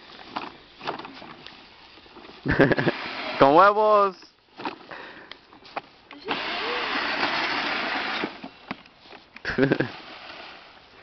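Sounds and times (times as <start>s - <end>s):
electric ride-on vehicle motor whirring: 2.6s - 3.5s, 6.1s - 8.6s, 9.6s - 10.8s.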